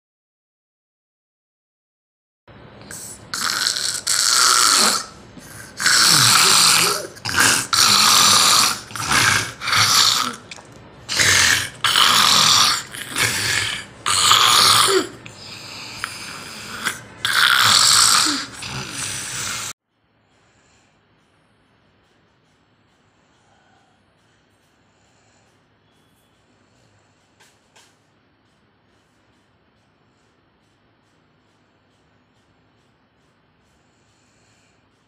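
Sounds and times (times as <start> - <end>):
person snoring heavily: 2.8 - 19.8.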